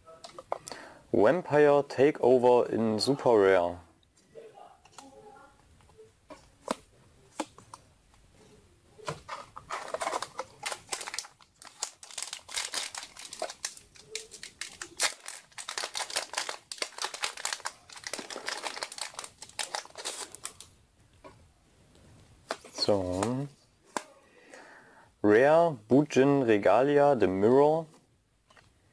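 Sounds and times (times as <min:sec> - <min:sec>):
cards being handled: 0:09.1 - 0:20.7
foil wrapper crinkling and tearing: 0:09.7 - 0:20.7.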